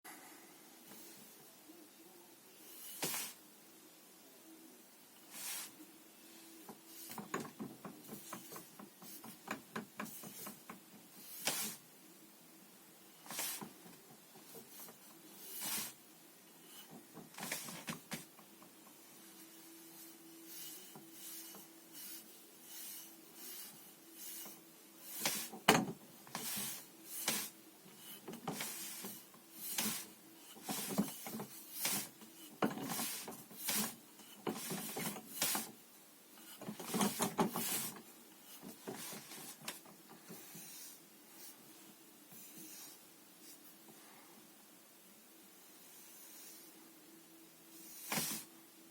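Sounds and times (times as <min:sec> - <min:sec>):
faint steady hum: 0:00.1 - 0:48.9
sleeves swishing against each other: 0:02.7 - 0:03.4, 0:05.2 - 0:07.4, 0:08.1 - 0:11.8, 0:13.2 - 0:16.0, 0:19.2 - 0:35.8, 0:36.4 - 0:43.7, 0:47.8 - 0:48.5.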